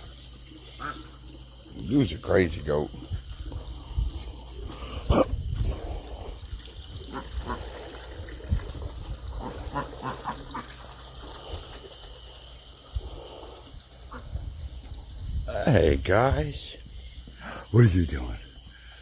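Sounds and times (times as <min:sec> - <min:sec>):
insect chirring: 0:00.0 - 0:19.0.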